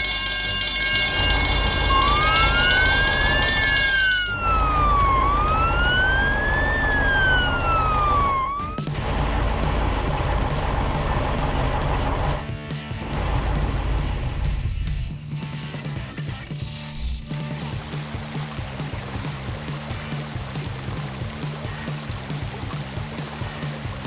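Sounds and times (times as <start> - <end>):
steady high tone: 0.0 - 8.8
emergency vehicle siren wailing: 0.0 - 12.4
low rumble: 1.1 - 15.2.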